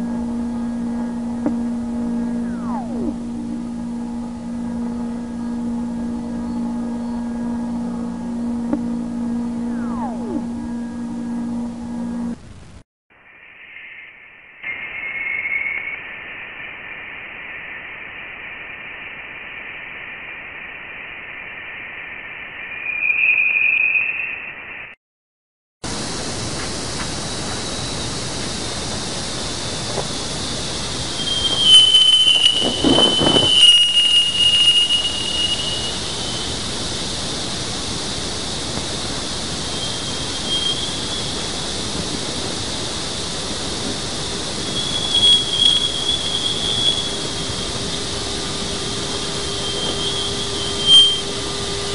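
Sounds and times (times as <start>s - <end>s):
high squealing tones: 0.0s - 12.4s, 22.0s - 25.0s, 30.8s - 51.9s
wide static hiss: 0.0s - 23.0s, 25.8s - 51.9s
thin hiss: 25.9s - 51.9s.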